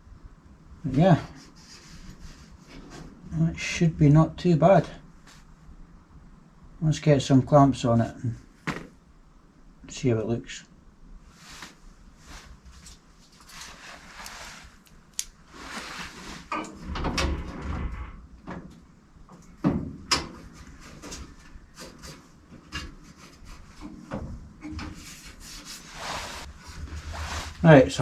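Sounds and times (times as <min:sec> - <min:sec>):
metal scraping and rubbing: 0:20.4 - 0:28.0.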